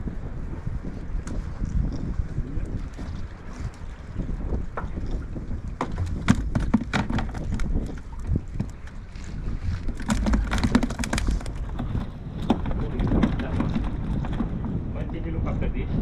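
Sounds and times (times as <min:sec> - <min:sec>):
wind buffeting microphone: 0:00.0 - 0:16.0
sharp clicks and knocks: 0:05.8 - 0:08.9, 0:09.8 - 0:14.8.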